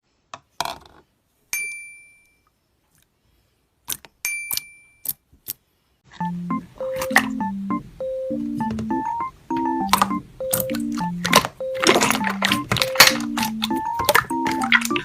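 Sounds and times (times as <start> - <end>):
keyboard tune: 6.1 - 15.0.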